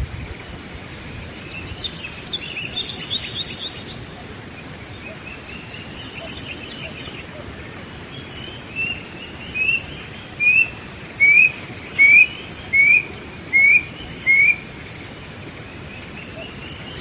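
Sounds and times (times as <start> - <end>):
bird whistling rising notes: 10.4 - 14.6.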